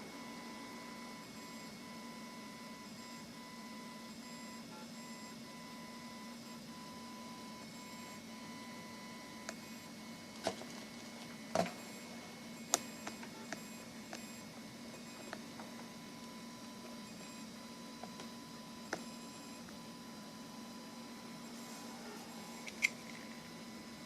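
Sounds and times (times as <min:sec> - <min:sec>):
machine hum: 0:07.6 - 0:24.0.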